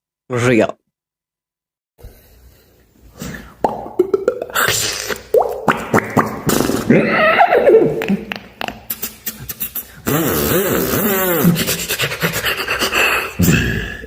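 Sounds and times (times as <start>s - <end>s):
beatboxed mouth clicks: 3.6s - 6.9s, 8.0s - 12.9s.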